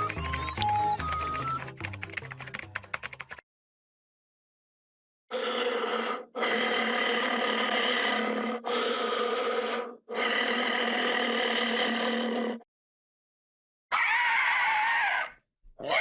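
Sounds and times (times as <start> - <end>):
monster cries: 13.9 - 16.0.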